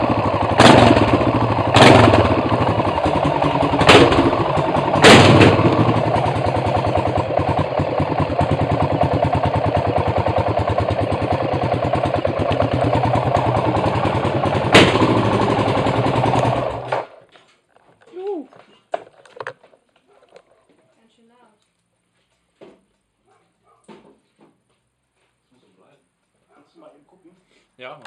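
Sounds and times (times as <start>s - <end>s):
motorcycle engine idling: 0.0s - 16.9s
sharp exhaust cracks: 0.0s - 17.2s.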